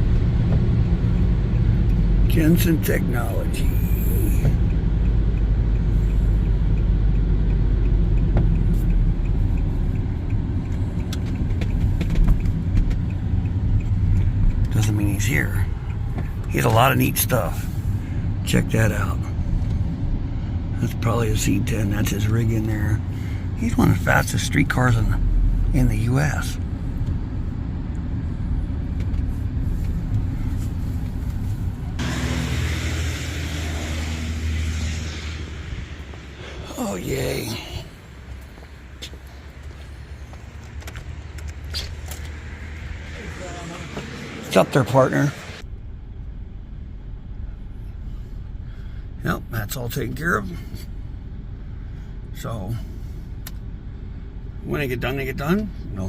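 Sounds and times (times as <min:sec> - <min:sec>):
car engine and road rumble: 0:00.0 - 0:56.0
faint regular ticking: 0:00.3 - 0:31.5
steady rushing noise: 0:26.2 - 0:45.7.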